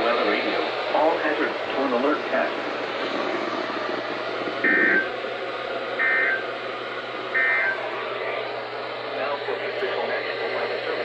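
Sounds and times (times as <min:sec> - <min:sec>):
radio signal hiss: 0:00.2 - 0:05.1
warbling data bursts: 0:02.4 - 0:05.2, 0:06.0 - 0:06.6, 0:07.3 - 0:07.9.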